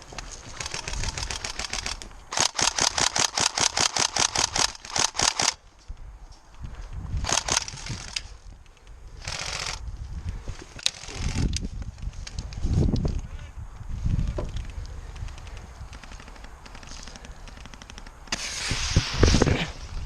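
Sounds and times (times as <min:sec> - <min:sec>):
brief hiss: 0:18.3 - 0:19.7.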